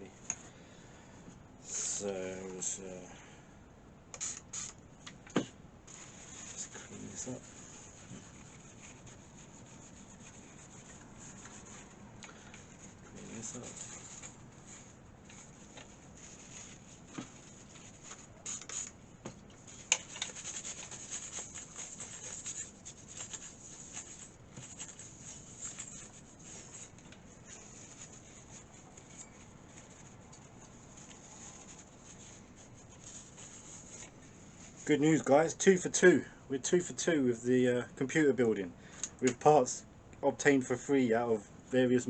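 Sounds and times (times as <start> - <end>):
wipe rubbing a surface: 5.9 - 12.0, 12.6 - 18.9, 19.6 - 35.0.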